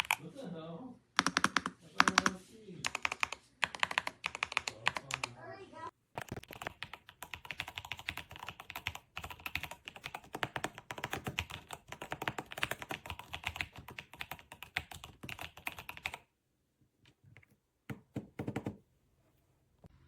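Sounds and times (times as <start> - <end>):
fast typing on mechanical keyboard: 0.0 - 0.2, 1.2 - 5.3, 6.2 - 16.2, 17.9 - 18.8.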